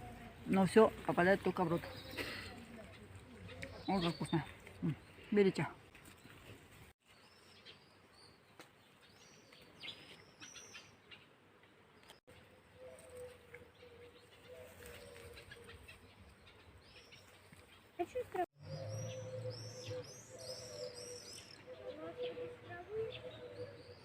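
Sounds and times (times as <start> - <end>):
songbirds chirping: 0.0 - 24.0.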